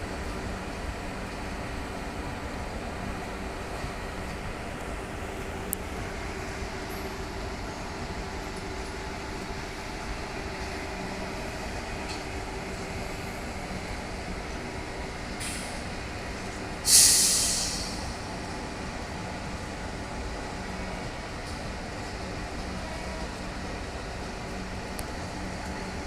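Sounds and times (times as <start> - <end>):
train rumble and hum: 0.0 - 26.0
air brake hiss: 15.4 - 15.8, 16.8 - 18.2.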